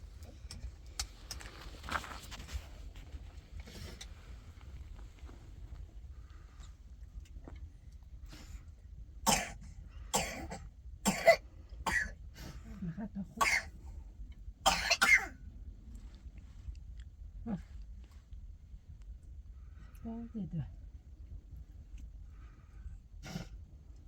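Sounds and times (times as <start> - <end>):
person coughing harshly: 9.3 - 12.2, 13.4 - 13.7, 14.6 - 15.4.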